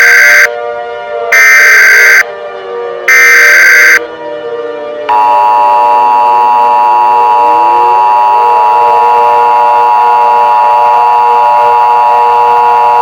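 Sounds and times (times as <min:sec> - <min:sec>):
siren winding up: 0:00.0 - 0:00.5, 0:01.4 - 0:02.3, 0:03.1 - 0:04.0, 0:05.1 - 0:13.0
two-tone alert tone: 0:03.1 - 0:04.0, 0:05.1 - 0:13.0.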